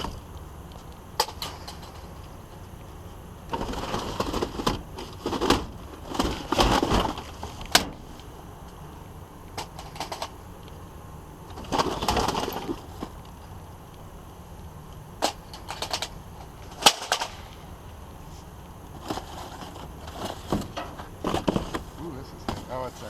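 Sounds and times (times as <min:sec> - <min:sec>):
rattling clatter of junk: 0:03.5 - 0:08.1, 0:09.6 - 0:10.4, 0:11.5 - 0:13.2, 0:15.2 - 0:17.5, 0:18.9 - 0:23.0
hard junk items clacking and knocking: 0:19.0 - 0:22.8.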